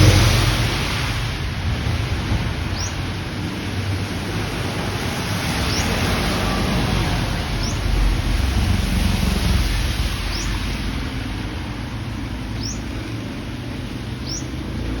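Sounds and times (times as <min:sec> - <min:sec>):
low rumble: 0:00.0 - 0:05.2, 0:05.8 - 0:13.8
rain hissing: 0:00.0 - 0:15.0
high rising bird chirps: 0:02.8 - 0:03.0.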